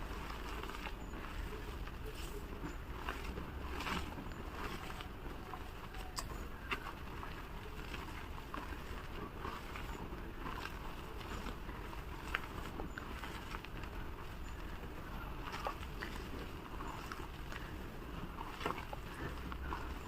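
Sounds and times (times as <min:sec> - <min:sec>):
chalk crunching and crackling: 0:00.0 - 0:20.0.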